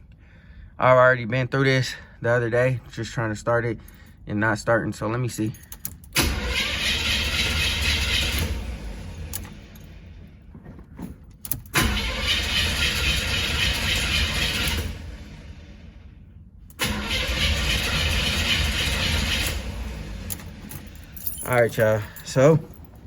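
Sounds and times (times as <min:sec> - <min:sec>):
car starter cranking engine: 0:05.8 - 0:10.2, 0:11.5 - 0:16.0, 0:16.7 - 0:22.4.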